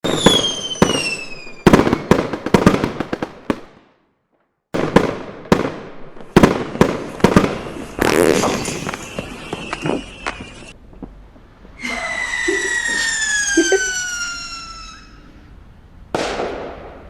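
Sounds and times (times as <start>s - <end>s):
firework falling whistle: 0.0s - 2.1s, 7.3s - 10.8s, 11.8s - 15.3s
firework bangs and crackles: 0.0s - 4.0s, 4.7s - 11.8s, 16.1s - 17.0s.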